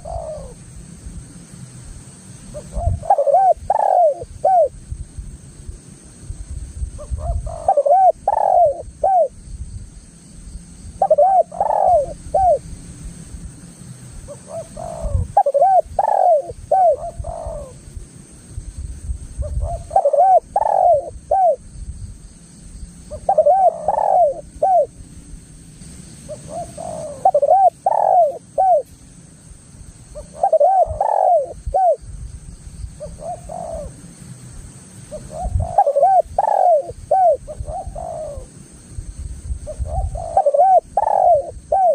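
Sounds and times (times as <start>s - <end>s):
dove cooing: 0.0s - 0.7s, 2.5s - 4.8s, 7.0s - 9.4s, 11.0s - 12.7s, 14.3s - 17.8s, 19.4s - 21.6s, 23.1s - 25.0s, 26.3s - 28.9s, 30.1s - 32.1s, 33.0s - 34.0s, 35.1s - 38.6s, 39.6s - 41.9s.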